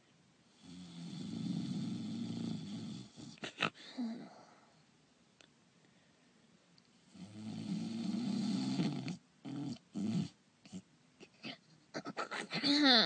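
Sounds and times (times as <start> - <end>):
cartoon-style snoring: 0.6 - 4.3, 7.1 - 10.8.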